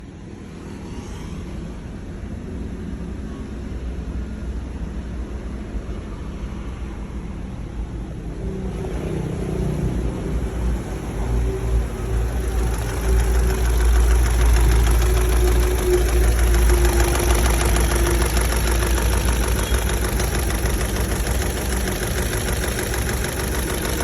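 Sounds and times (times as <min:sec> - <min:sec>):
car engine idling and knocking: 0:09.8 - 0:24.0.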